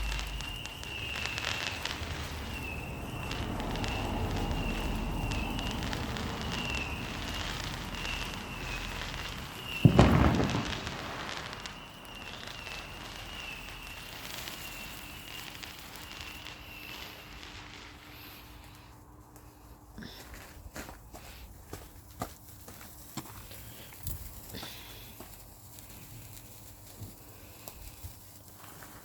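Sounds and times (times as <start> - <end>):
firework bang: 0.0 - 17.6
sparklers fizzing and crackling: 0.0 - 19.7, 21.2 - 29.0.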